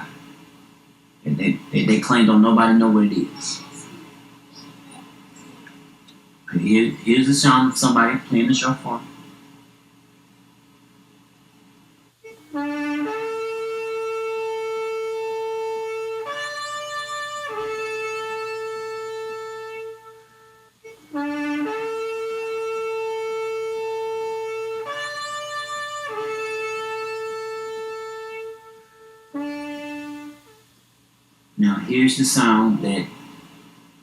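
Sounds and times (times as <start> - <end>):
shofar blown in long calls: 12.5 - 30.7.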